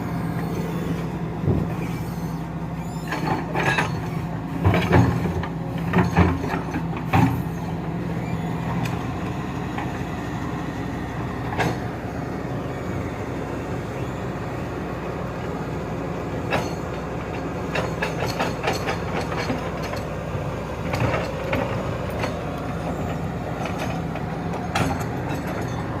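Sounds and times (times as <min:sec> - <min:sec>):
excavator diesel engine running: 0:00.0 - 0:26.0
metallic clanks and knocks: 0:03.1 - 0:07.5, 0:11.5 - 0:12.0, 0:16.5 - 0:20.1, 0:23.6 - 0:25.9.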